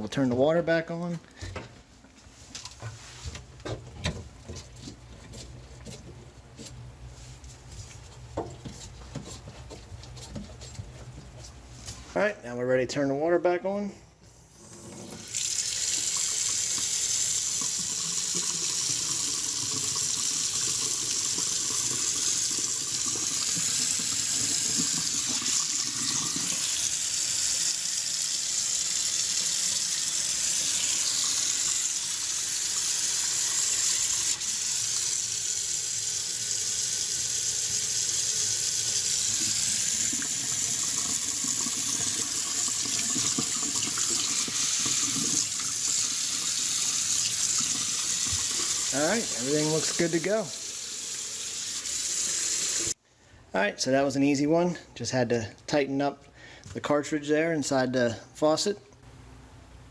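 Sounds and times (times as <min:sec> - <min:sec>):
faucet water splashing into sink: 0:14.8 - 0:53.0.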